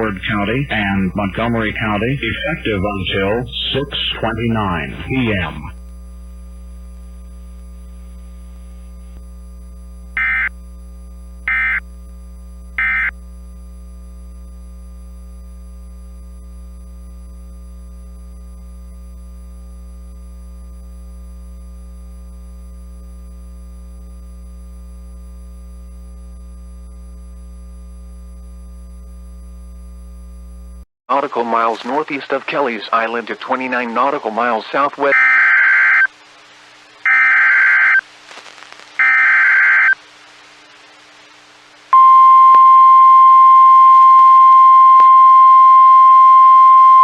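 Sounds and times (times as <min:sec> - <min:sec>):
steady electrical hum: 0:00.0 - 0:43.5
shrill data bursts: 0:10.2 - 0:10.5, 0:11.5 - 0:11.8, 0:12.8 - 0:13.1, 0:35.1 - 0:36.1, 0:37.0 - 0:38.0, 0:39.0 - 0:40.0.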